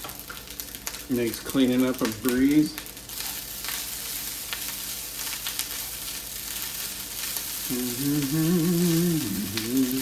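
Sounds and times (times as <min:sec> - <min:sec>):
rice sizzling in a frying pan: 0:00.0 - 0:10.0
man humming: 0:07.6 - 0:10.0.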